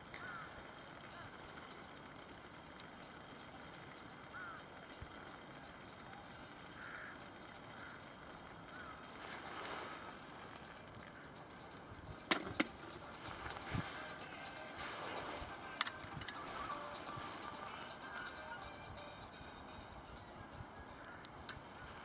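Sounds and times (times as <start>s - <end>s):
wood fire hissing and crackling: 0.0s - 22.0s
sharp pops from fire: 10.4s - 13.7s.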